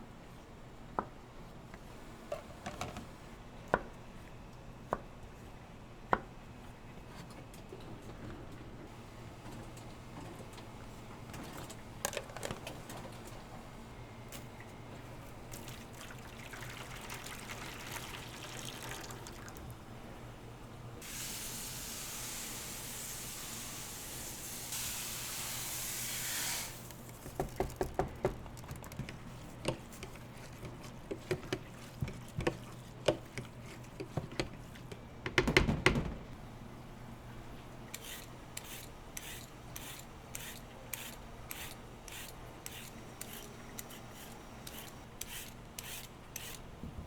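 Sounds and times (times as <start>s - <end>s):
water running from tap: 15.8s - 19.6s.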